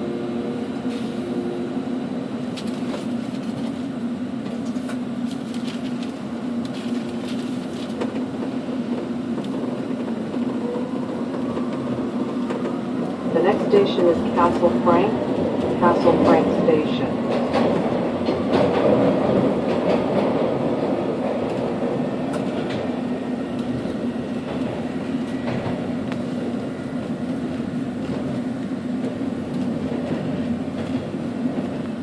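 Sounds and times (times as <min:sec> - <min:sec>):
subway train rumbling on rails: 0:00.0 - 0:32.0.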